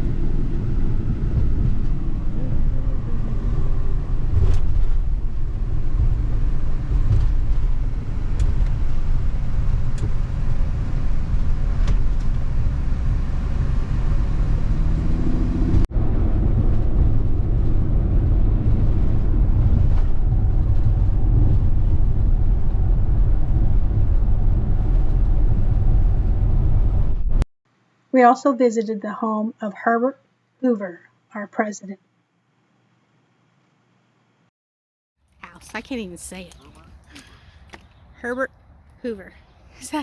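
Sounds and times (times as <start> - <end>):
car engine and road rumble: 0.0 - 27.4.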